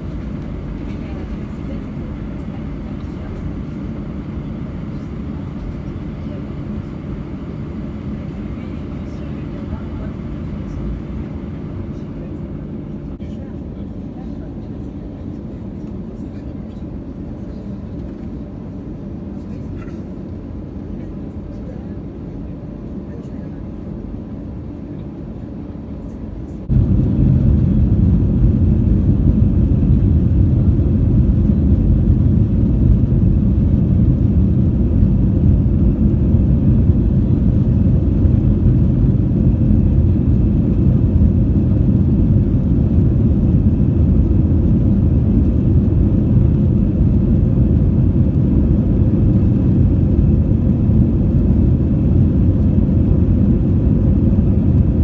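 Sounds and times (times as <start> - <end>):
airliner engines roaring in cabin: 0.0 - 55.0.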